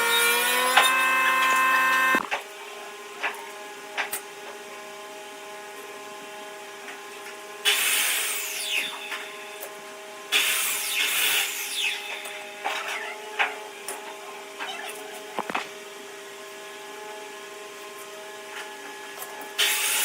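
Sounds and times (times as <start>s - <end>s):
power tool humming: 0.0s - 2.7s.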